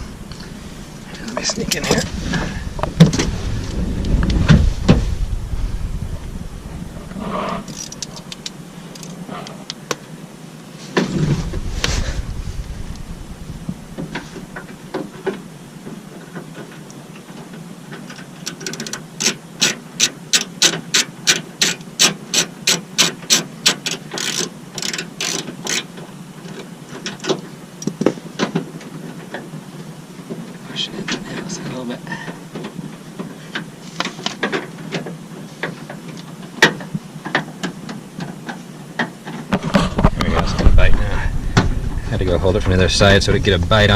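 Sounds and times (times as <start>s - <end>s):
handling scraping: 0.0s - 9.7s
ratchet wrench clicking: 20.3s - 25.8s.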